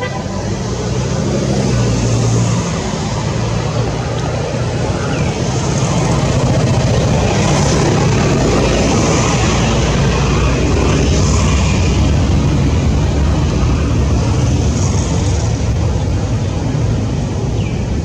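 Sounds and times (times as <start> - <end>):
constant noise wash: 0.0 - 18.0
low motor drone: 0.0 - 18.0.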